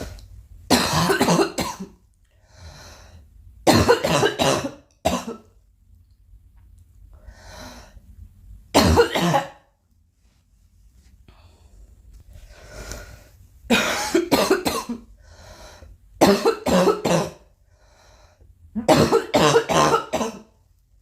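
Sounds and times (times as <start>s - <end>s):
girl coughing: 0.7s - 2.0s, 3.7s - 5.5s, 8.8s - 9.6s, 13.7s - 15.0s, 16.2s - 17.4s, 18.8s - 20.5s
faint breaths: 7.1s - 8.2s, 11.2s - 13.4s, 15.2s - 16.0s, 17.6s - 18.5s.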